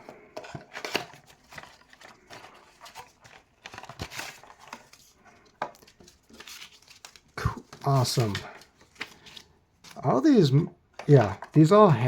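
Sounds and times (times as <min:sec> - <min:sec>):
box opening taps and rustles: 0:00.0 - 0:06.8, 0:10.9 - 0:12.0.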